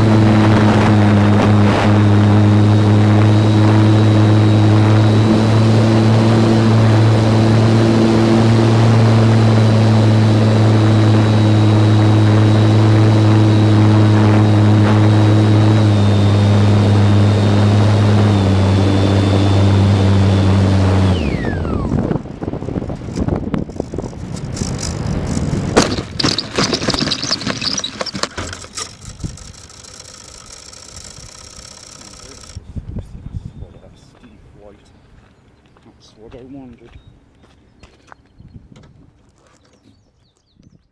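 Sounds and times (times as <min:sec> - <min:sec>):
rc plane motor whine: 0:00.0 - 0:32.6
knocks and rattles: 0:23.0 - 0:32.4.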